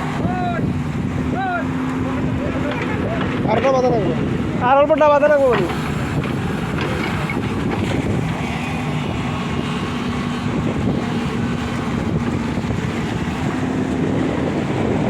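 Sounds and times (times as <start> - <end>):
excavator diesel engine: 0.0 - 15.0
wind buffeting microphone: 0.0 - 15.0.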